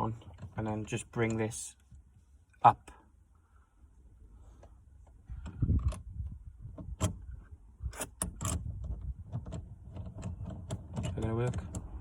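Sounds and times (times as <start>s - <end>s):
clicks and knocks of gear knob: 0.0s - 1.9s, 4.6s - 12.0s.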